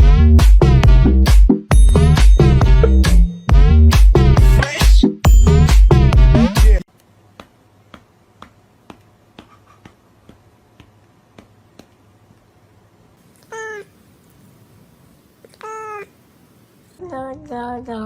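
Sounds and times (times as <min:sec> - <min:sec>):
cat meowing: 0:13.4 - 0:14.0, 0:15.5 - 0:16.2.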